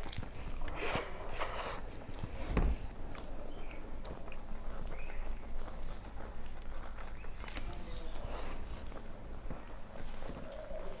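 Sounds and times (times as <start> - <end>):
dull thump: 2.3 - 3.0.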